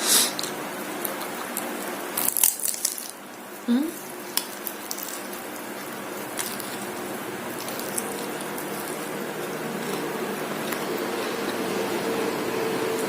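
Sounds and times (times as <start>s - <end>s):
room hiss and low hum: 0.0s - 13.0s
chewing food clicks: 4.3s - 10.8s.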